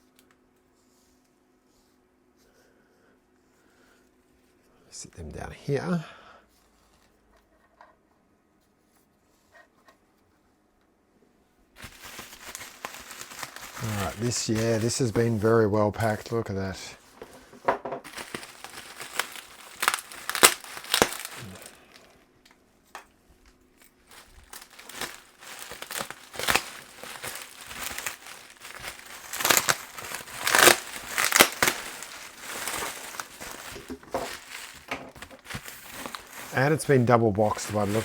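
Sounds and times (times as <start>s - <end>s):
packing material crinkling: 11.8s - 22.2s, 23.8s - 38.0s.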